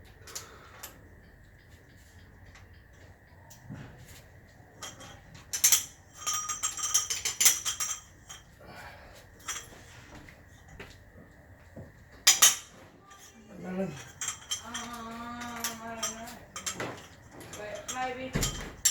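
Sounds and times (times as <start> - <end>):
metal parts and tools clinking: 4.8 - 8.6, 9.4 - 10.0, 12.2 - 18.9.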